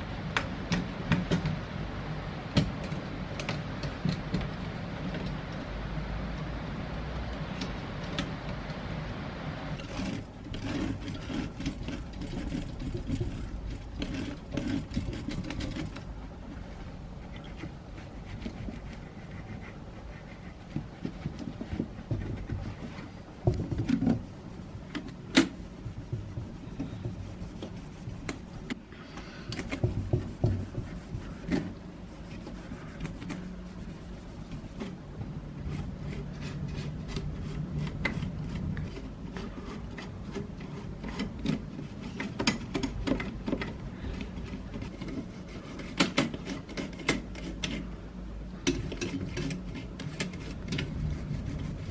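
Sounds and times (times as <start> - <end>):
rubbing and scrubbing on typewriter: 9.8 - 16.0, 17.1 - 28.8, 29.6 - 35.0, 35.6 - 47.9, 48.8 - 51.9
clicks and knocks of parts handled: 35.7 - 45.2, 48.6 - 51.0.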